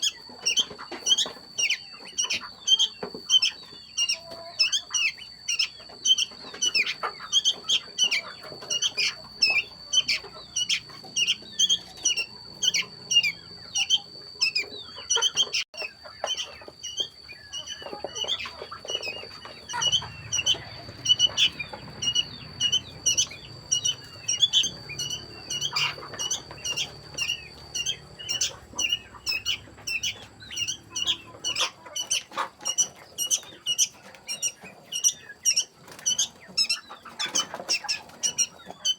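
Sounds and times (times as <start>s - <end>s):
high-pitched whine: 0.0s - 31.7s
chicks peeping: 0.0s - 38.9s.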